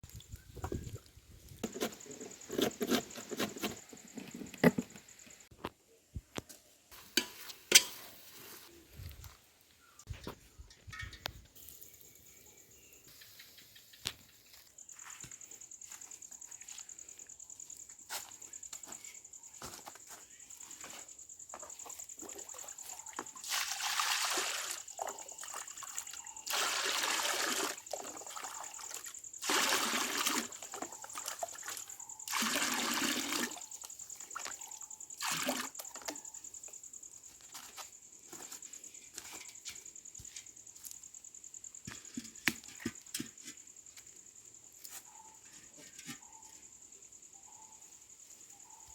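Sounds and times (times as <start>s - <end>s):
water splashing: 22.2s - 33.6s.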